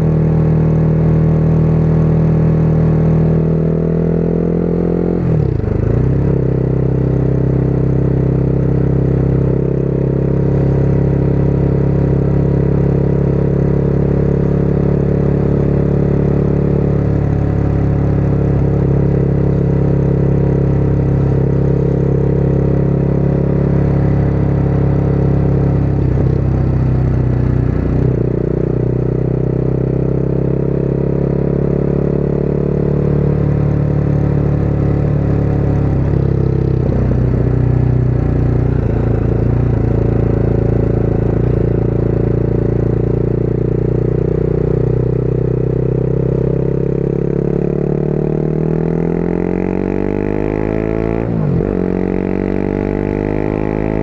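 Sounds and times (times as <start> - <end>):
motorcycle engine running: 0.0 - 54.0.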